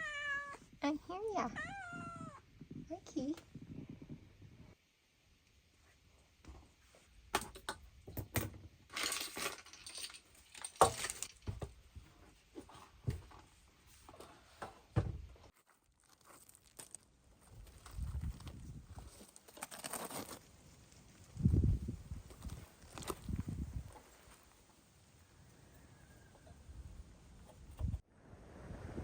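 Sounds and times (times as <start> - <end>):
light clinks and rustling: 7.4 - 11.6.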